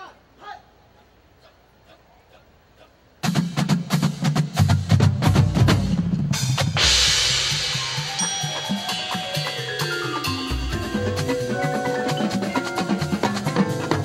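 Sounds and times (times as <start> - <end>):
marching drumline: 3.2 - 14.0
ringing pitched notes: 7.6 - 13.9.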